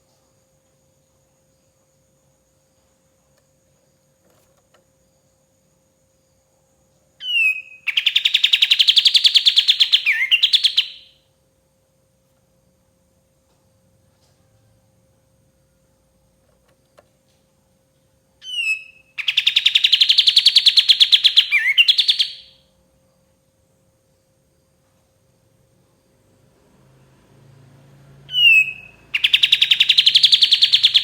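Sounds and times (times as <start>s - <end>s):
songbird trilling: 7.2s - 11.2s, 18.4s - 22.6s, 28.3s - 31.0s.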